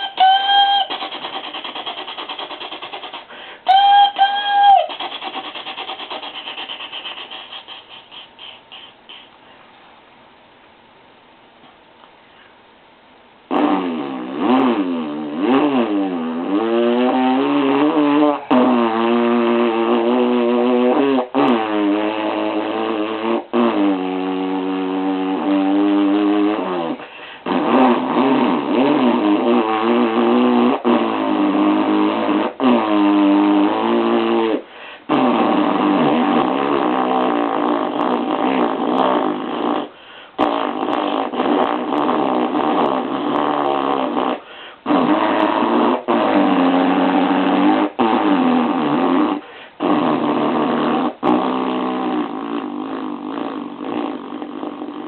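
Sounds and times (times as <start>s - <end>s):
person imitating motorcycle engine: 0.0s - 9.3s, 13.5s - 55.0s.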